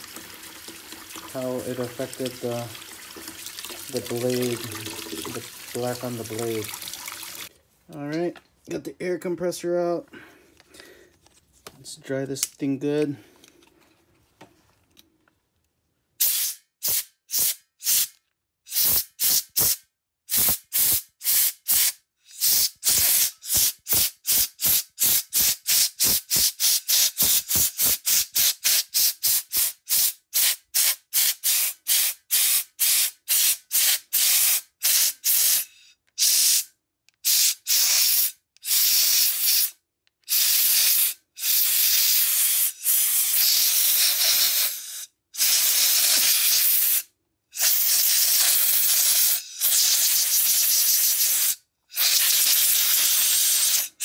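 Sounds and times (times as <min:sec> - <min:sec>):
compressed air hissing blasts: 0:16.2 - 0:18.1, 0:18.7 - 0:54.0.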